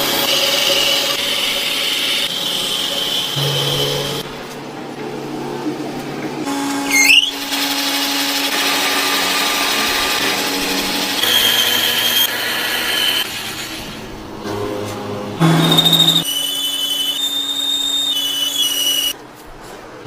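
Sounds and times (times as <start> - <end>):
power tool humming: 6.5 - 17.3
rising screech: 6.8 - 7.5, 14.4 - 19.2.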